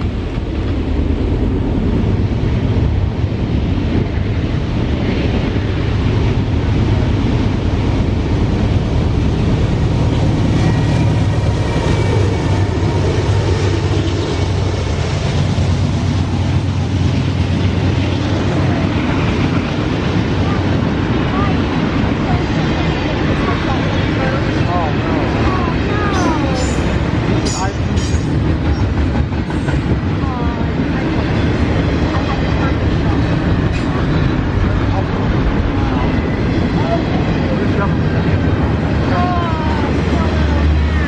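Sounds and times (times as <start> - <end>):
diesel locomotives engine drone: 0.0 - 41.0.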